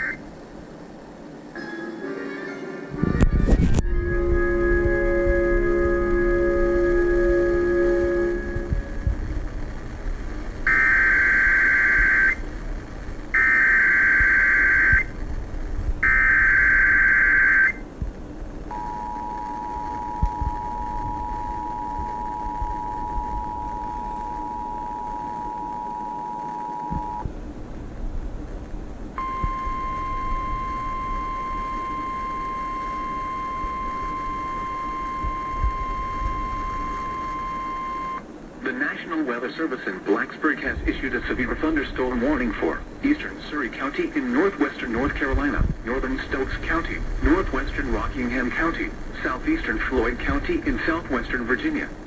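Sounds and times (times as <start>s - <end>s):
warbling data bursts: 0.0s - 0.3s, 3.8s - 17.9s, 18.7s - 27.3s, 29.2s - 39.0s
radio hiss: 0.0s - 1.5s, 2.9s - 52.0s
two-tone attention signal: 3.6s - 9.2s, 18.7s - 27.3s, 29.2s - 38.2s
steady single alert tone: 3.9s - 9.0s, 18.7s - 27.2s.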